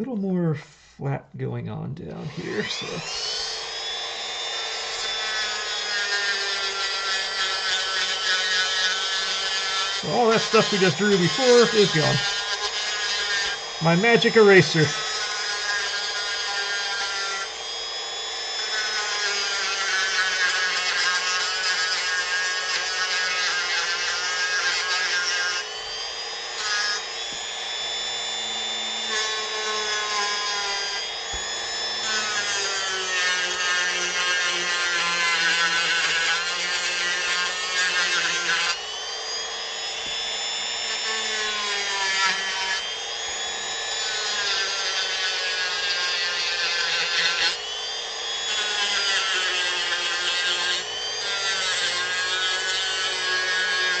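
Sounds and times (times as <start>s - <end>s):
rotary tool sanding wood: 2.2s - 54.0s.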